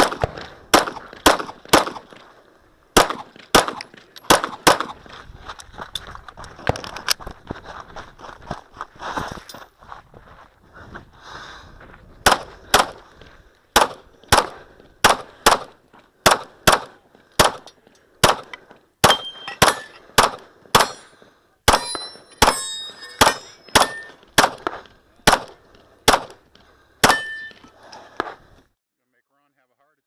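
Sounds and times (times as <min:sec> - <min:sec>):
pistol shots: 0:00.0 - 0:02.2, 0:03.0 - 0:05.0, 0:12.2 - 0:13.0, 0:13.8 - 0:22.6, 0:23.2 - 0:26.4, 0:27.0 - 0:27.5
metallic ring of hit target: 0:19.1 - 0:20.0, 0:20.8 - 0:24.2, 0:27.1 - 0:27.7.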